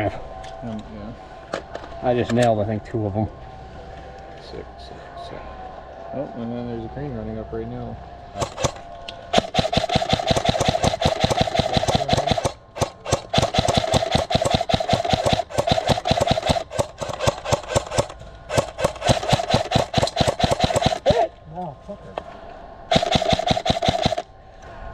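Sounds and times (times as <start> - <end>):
airsoft gun firing bursts: 8.4 - 21.3, 22.9 - 24.3.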